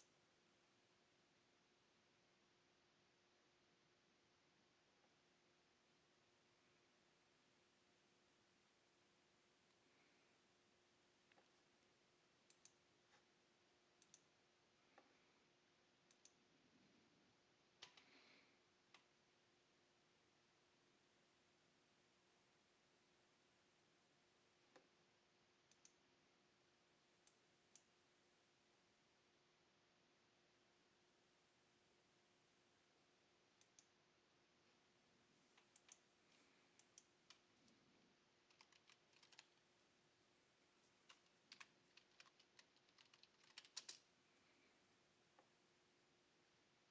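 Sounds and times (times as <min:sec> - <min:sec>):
faint steady hum: 0:00.0 - 0:46.9
computer mouse clicks: 0:12.4 - 0:13.3, 0:14.0 - 0:14.3, 0:16.0 - 0:16.4, 0:17.8 - 0:19.1, 0:25.6 - 0:26.0, 0:33.6 - 0:34.0, 0:35.5 - 0:39.6, 0:40.8 - 0:44.1.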